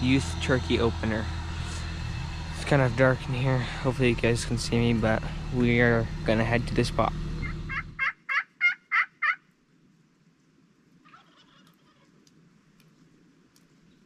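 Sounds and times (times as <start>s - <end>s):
turkey yelping: 7.4s - 9.5s, 11.0s - 12.2s.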